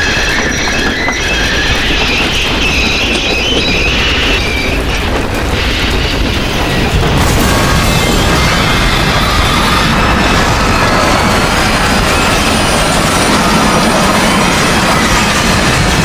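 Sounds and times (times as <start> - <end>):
high metallic squeal: 0.0 - 16.0
loud steady rumble: 3.6 - 16.0.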